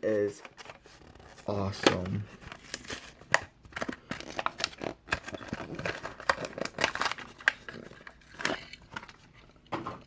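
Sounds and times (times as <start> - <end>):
plastic packaging crinkling: 0.6 - 9.6
packaging tearing: 2.4 - 9.2.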